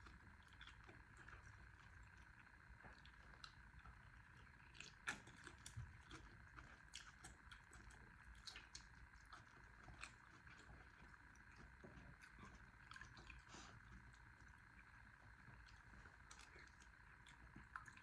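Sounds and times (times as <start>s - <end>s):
low steady hum: 0.0s - 18.0s
quiet chewing: 0.0s - 18.0s.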